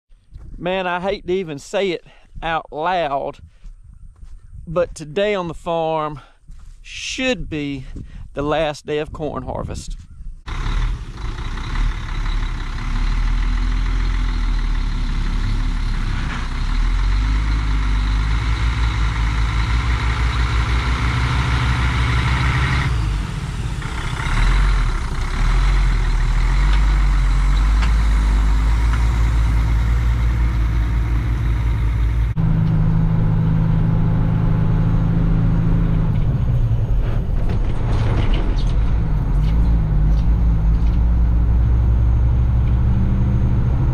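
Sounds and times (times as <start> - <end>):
heavy vehicle engine running: 10.5 - 43.9.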